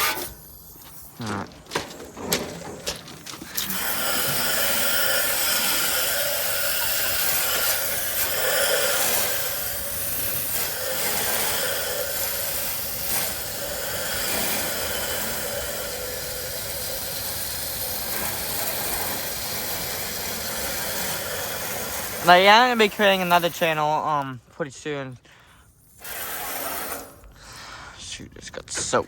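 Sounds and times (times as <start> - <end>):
hose spraying water on metal fins: 2.8 - 24.3.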